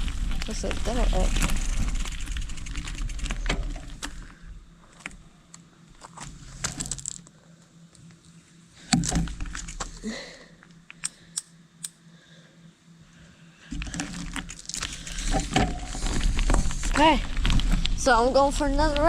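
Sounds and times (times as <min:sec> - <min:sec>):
gear clicking and rattling: 0:00.0 - 0:04.3.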